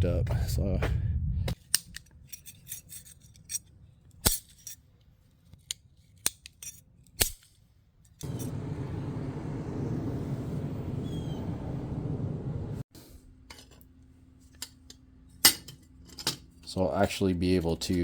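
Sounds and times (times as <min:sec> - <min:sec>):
metal parts clicking and clinking: 0:01.6 - 0:08.6, 0:14.5 - 0:16.7.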